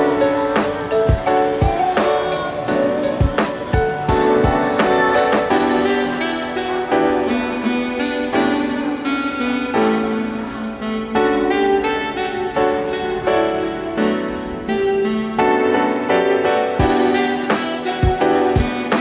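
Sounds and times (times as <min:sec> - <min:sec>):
instrumental piano music: 0:00.0 - 0:19.0.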